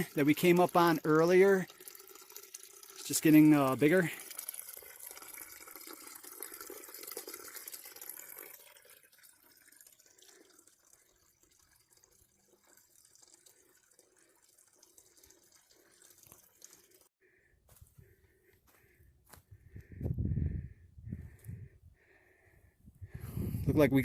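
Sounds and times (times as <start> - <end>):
creek trickling over rocks: 0.0 - 17.1.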